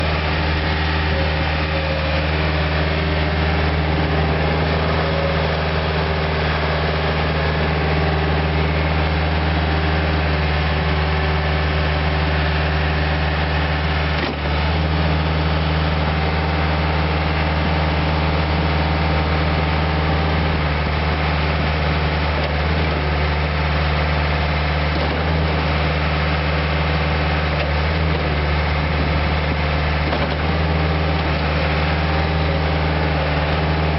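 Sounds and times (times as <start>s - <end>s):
diesel engine idling: 0.0s - 33.9s.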